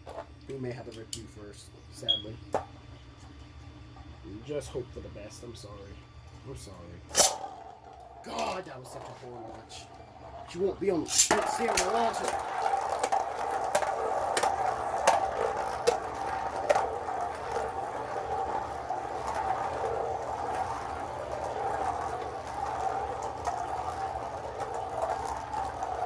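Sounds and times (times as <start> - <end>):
spinning tops whirring: 3.9 - 26.0
spinning tops clacking together: 7.1 - 9.9, 10.8 - 26.0.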